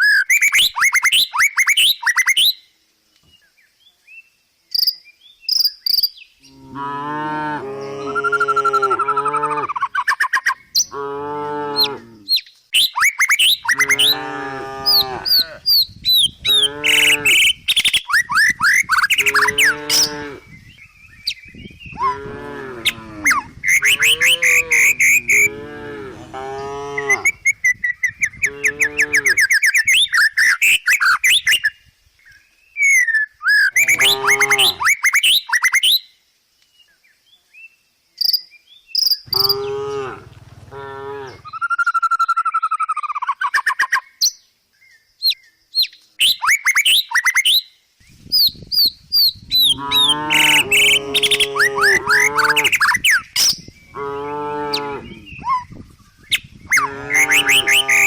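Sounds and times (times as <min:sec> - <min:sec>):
birds chirping: 0:03.2 - 0:31.7, 0:32.3 - 0:35.7, 0:38.2 - 0:42.6, 0:43.4 - 0:58.0
cows mooing: 0:06.5 - 0:09.7, 0:10.9 - 0:12.3, 0:13.7 - 0:15.6, 0:16.6 - 0:17.5, 0:19.1 - 0:20.4, 0:22.0 - 0:27.4, 0:28.5 - 0:29.4, 0:33.8 - 0:34.8, 0:39.3 - 0:41.5, 0:49.7 - 0:52.8, 0:53.9 - 0:55.3, 0:56.8 - 0:58.0.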